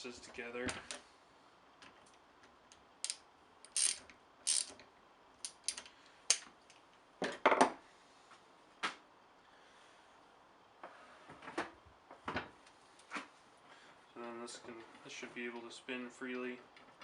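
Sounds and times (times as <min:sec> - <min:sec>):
wrench ratcheting: 0:03.0 - 0:04.8.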